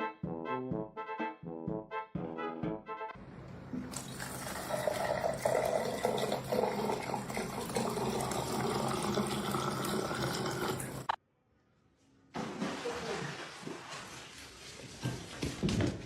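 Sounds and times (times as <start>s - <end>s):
tap water running: 3.7s - 11.2s.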